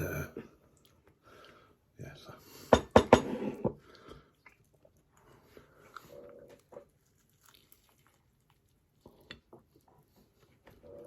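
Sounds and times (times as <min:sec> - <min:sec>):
quiet chewing: 0:00.5 - 0:01.8, 0:03.7 - 0:11.0.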